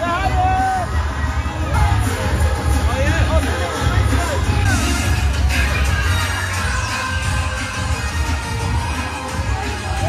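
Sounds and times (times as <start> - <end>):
crowd noise: 0.0 - 10.0
upbeat music from loudspeakers: 0.0 - 10.0.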